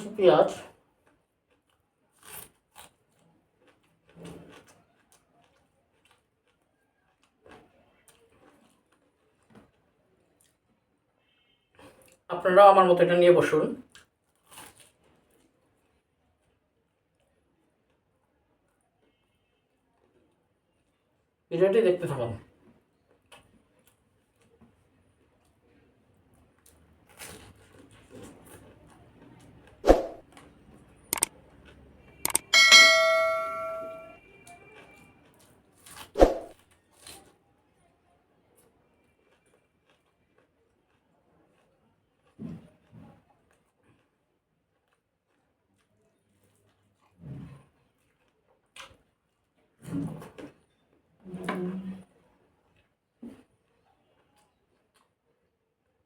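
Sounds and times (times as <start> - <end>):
soft knocks and crunches of eating: 0.7 - 12.3, 13.8 - 21.3, 22.4 - 32.4, 34.4 - 37.8, 38.5 - 56.0
sharp clicks: 32.2 - 32.5.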